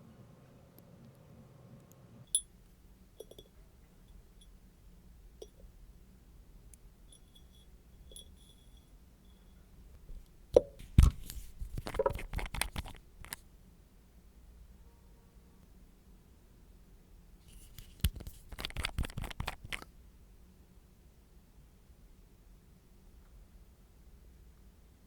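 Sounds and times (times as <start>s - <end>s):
small tools and bottles clicking: 3.2s - 3.6s, 10.6s - 13.4s, 17.5s - 19.9s.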